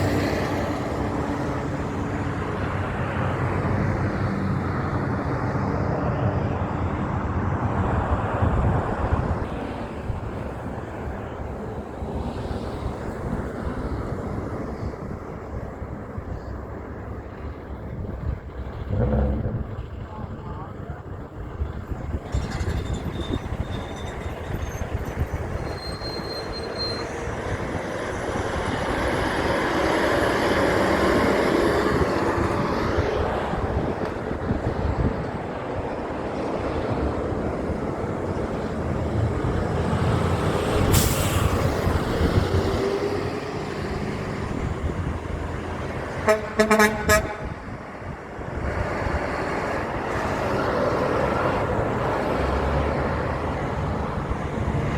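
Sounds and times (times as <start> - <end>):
heavy truck passing: 0.0 - 26.2, 27.0 - 54.9
air horn blasts: 46.2 - 47.6.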